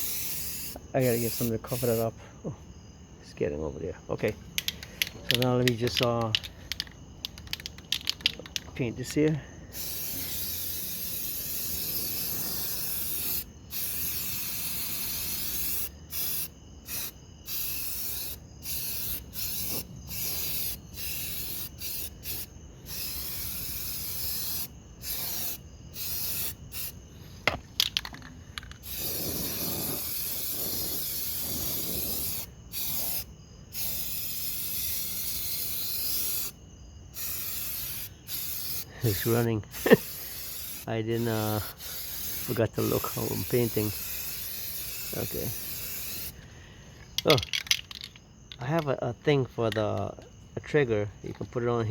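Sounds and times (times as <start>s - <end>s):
aerosol spray can spraying: 0.0s - 2.0s, 9.8s - 27.0s, 28.8s - 36.5s, 37.2s - 46.4s
sharp clicks: 4.2s - 8.8s.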